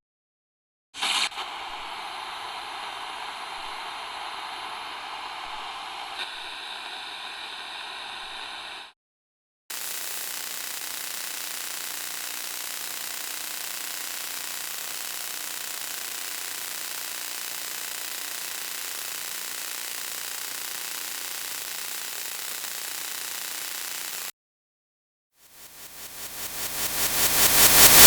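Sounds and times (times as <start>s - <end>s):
white noise hiss: 1.0s - 8.9s.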